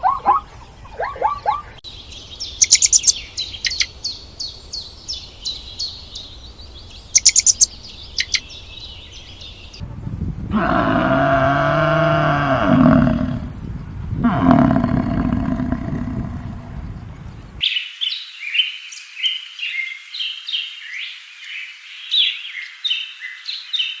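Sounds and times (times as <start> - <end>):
songbird chirping: 0.0 - 9.8, 10.6 - 24.0
low animal calls: 10.5 - 13.6, 14.2 - 17.6.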